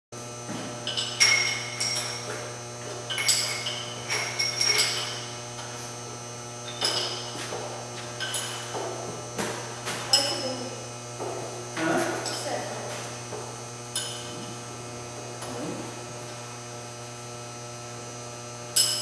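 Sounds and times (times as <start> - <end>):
steady low hum: 0.2 - 19.0
metal tools tapping on metal: 0.8 - 2.4, 3.1 - 5.3, 6.7 - 7.4, 8.0 - 8.8, 14.0 - 14.3.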